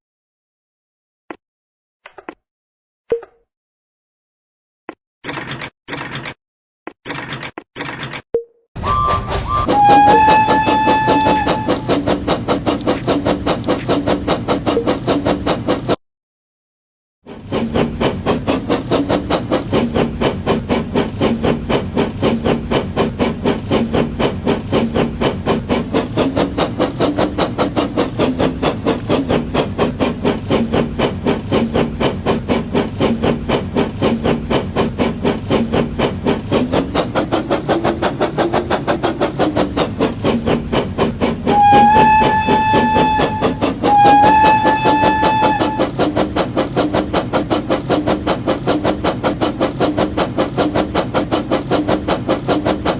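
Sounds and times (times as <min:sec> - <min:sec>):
single-note train whistle: 0:08.8 - 0:12.1, 0:41.5 - 0:46.0
steam locomotive chuffing: 0:08.8 - 0:16.0, 0:17.3 - 0:52.9.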